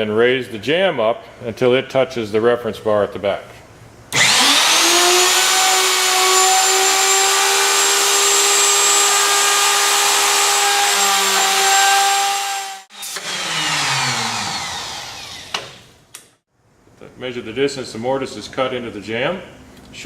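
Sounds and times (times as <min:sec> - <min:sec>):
router whining and winding down: 0:04.1 - 0:16.3.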